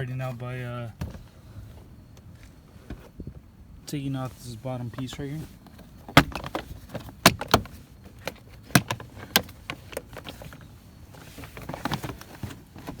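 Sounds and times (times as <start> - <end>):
plastic trim panel clicks and knocks: 6.1 - 10.3.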